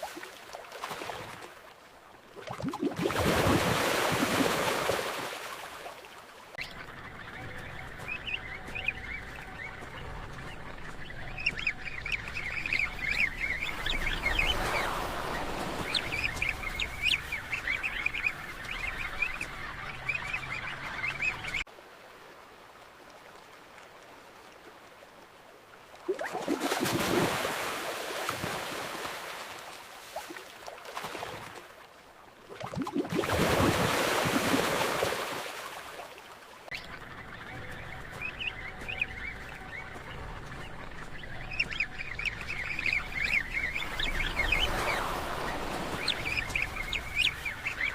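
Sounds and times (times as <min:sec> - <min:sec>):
ocean waves: 0:00.0 - 0:47.9.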